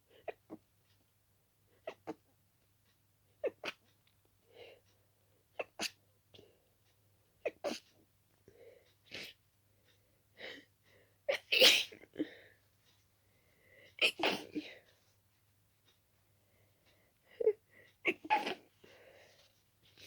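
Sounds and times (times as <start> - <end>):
person sneezing: 14.0 - 14.6.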